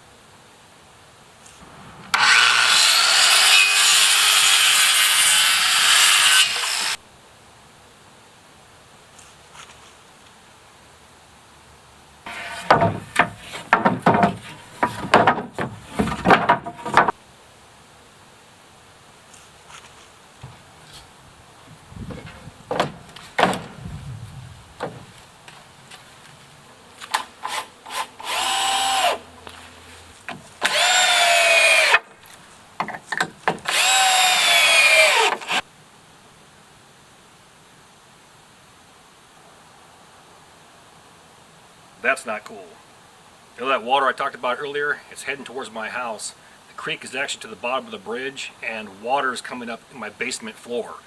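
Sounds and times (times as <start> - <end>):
power saw cutting: 2.0 - 7.0, 12.3 - 17.1, 27.4 - 29.3, 30.6 - 32.1, 33.5 - 35.6
wooden knocks and clunks: 12.3 - 17.2, 20.4 - 21.0, 21.7 - 25.2, 30.3 - 30.5, 32.8 - 33.7
loud thumps and knocks: 12.5 - 17.2, 22.0 - 25.1.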